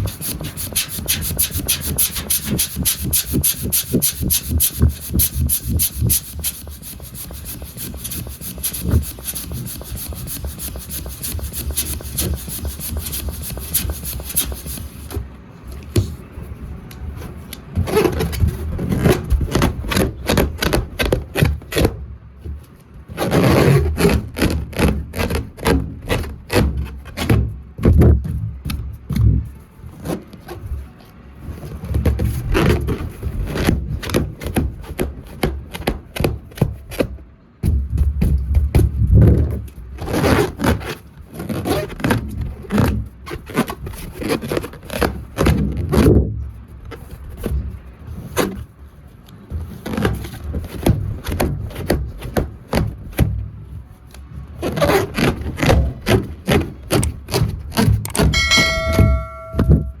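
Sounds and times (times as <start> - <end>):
balloons rubbing and squeaking: 0.0 - 15.2, 40.0 - 45.5, 54.5 - 58.0.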